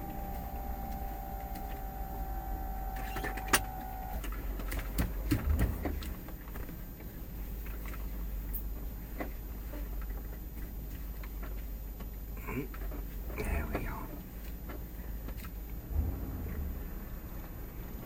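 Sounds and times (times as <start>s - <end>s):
electric motor whine: 0.0s - 4.9s
car engine running low: 0.0s - 18.0s.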